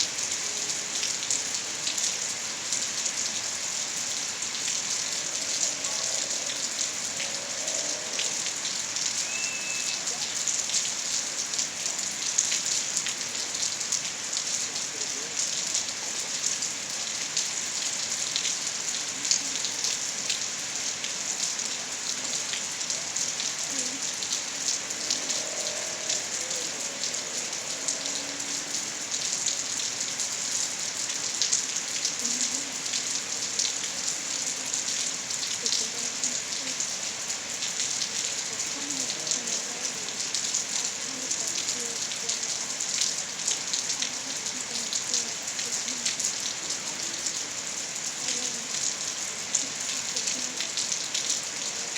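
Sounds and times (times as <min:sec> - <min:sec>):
raindrops ticking close by: 0:00.0 - 0:51.9
steady rainfall: 0:00.0 - 0:51.9.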